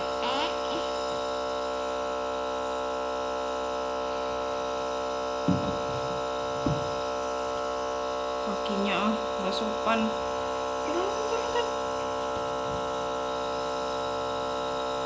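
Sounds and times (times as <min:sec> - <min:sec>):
compressor motor humming: 0:00.0 - 0:15.0.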